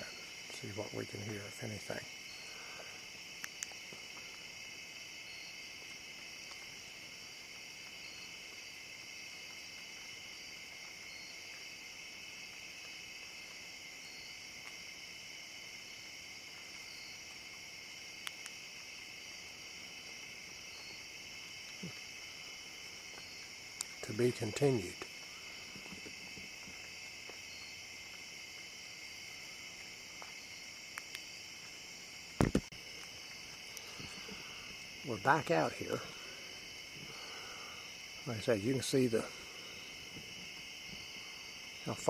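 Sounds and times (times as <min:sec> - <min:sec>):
crickets chirring: 0:00.0 - 0:42.0
faint clicks: 0:02.7 - 0:04.4, 0:18.2 - 0:18.6, 0:23.1 - 0:24.0, 0:29.8 - 0:31.8.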